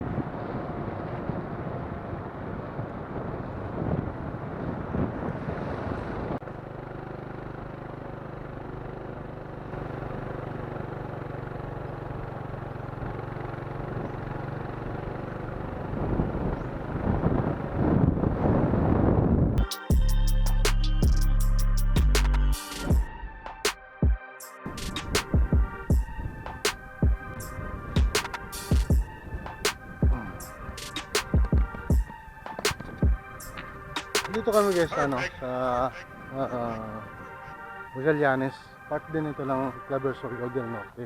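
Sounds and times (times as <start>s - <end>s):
wind buffeting microphone: 0.0s - 6.4s, 14.9s - 19.6s, 24.7s - 37.6s
low engine-like hum: 0.0s - 19.1s.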